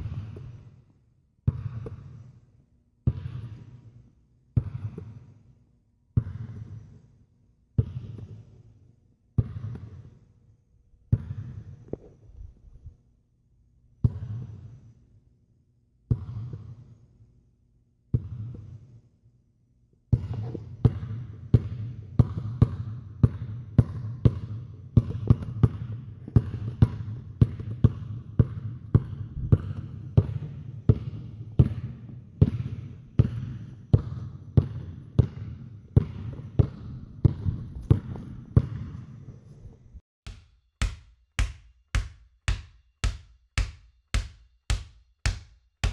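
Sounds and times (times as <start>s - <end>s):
basketball bouncing on hard floor: 1.5s - 2.1s, 3.1s - 3.7s, 6.2s - 6.8s, 7.8s - 8.4s, 9.4s - 10.1s, 11.1s - 12.1s, 18.1s - 18.7s, 20.1s - 39.1s, 40.3s - 45.9s.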